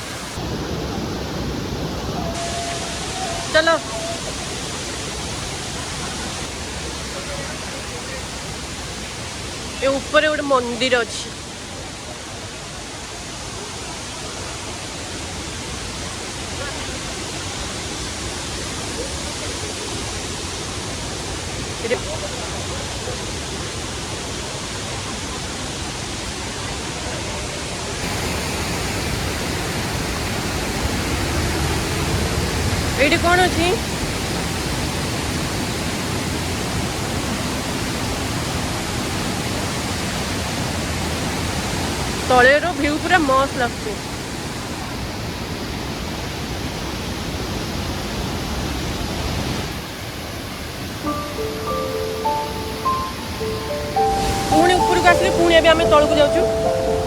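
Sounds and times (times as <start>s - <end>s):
waterfall rushing: 0.0s - 57.0s
background music: 51.0s - 57.0s.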